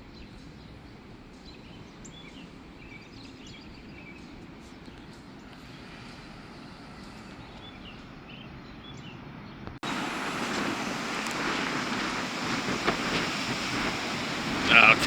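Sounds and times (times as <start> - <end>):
wind and rain rushing: 9.8 - 15.0.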